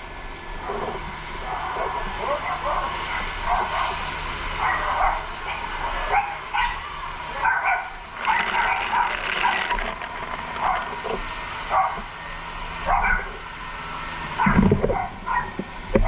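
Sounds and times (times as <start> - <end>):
dog barking: 0.6 - 9.8, 10.5 - 11.1, 11.7 - 12.1, 12.8 - 13.4, 14.4 - 15.6.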